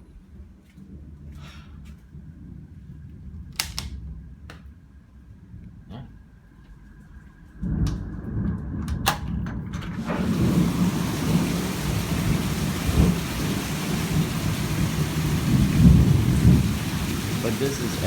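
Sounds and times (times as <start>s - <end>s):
thunder rumbling: 7.6s - 18.0s
heavy rain pouring: 9.9s - 18.0s.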